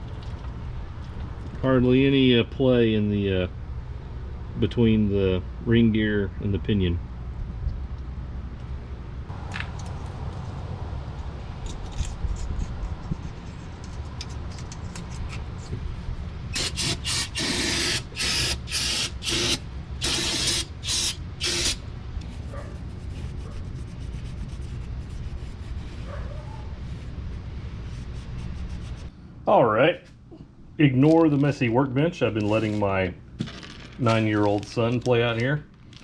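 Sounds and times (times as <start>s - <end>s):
low steady hum: 0.0s - 36.0s
aerosol spray can hissing: 16.6s - 21.8s.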